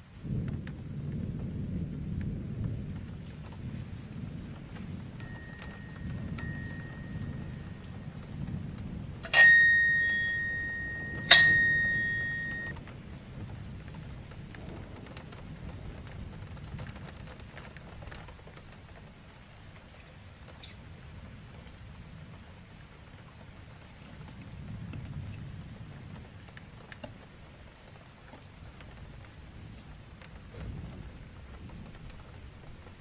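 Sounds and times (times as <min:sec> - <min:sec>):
low rumbling noise: 0:00.0 - 0:33.0
alarm clock bell dinging: 0:05.2 - 0:07.7, 0:09.2 - 0:12.7.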